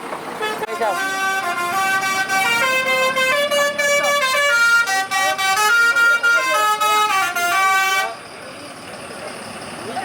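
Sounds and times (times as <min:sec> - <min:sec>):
musical air horns playing tune: 0:00.4 - 0:08.2.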